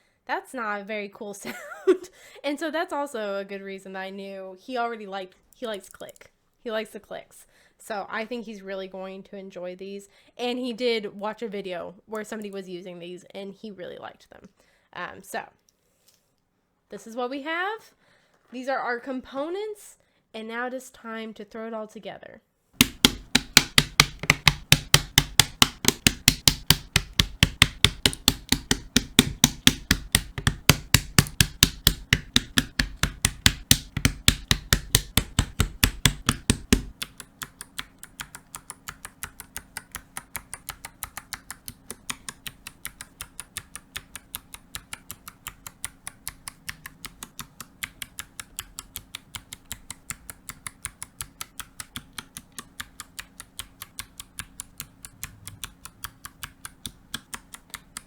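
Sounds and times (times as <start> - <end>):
faint steady hum: 22.8 - 58.0.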